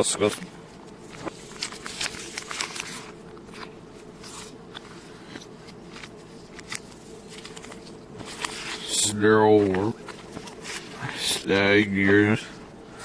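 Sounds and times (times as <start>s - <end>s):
faint steady hum: 0.0s - 13.0s
plastic case rustles and clicks: 4.3s - 11.0s.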